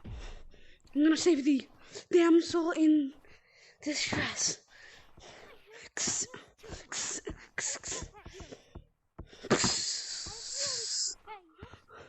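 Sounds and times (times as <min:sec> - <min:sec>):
child's wordless vocal noises: 0:01.0 - 0:03.2, 0:03.8 - 0:08.6, 0:09.2 - 0:11.9
breathy rush with voice: 0:04.3 - 0:12.0.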